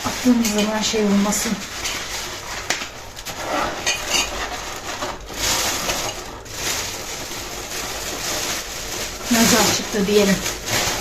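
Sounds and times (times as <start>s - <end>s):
rustling: 0.0s - 11.0s
glass shards clinking and scraping: 3.3s - 6.3s.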